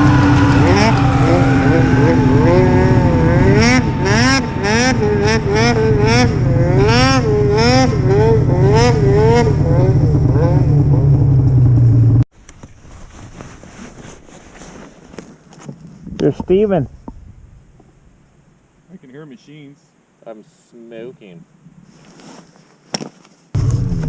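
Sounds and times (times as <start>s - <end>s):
snowmobile engine revving: 0.0s - 12.2s.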